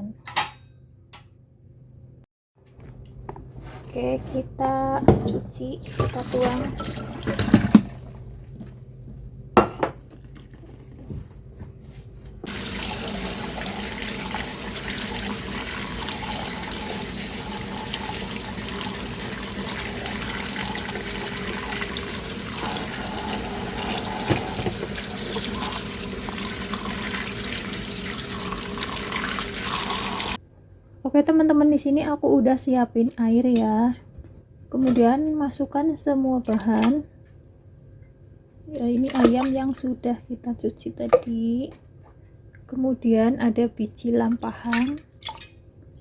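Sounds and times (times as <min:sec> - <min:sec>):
tap running into sink: 0:05.9 - 0:08.0, 0:12.5 - 0:30.4.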